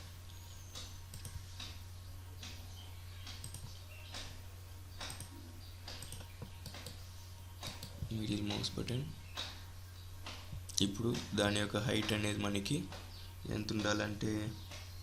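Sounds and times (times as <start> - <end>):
low electrical hum: 0.0 - 15.0
computer mouse clicks: 0.7 - 1.8, 3.2 - 4.3, 5.0 - 7.0, 7.6 - 8.7.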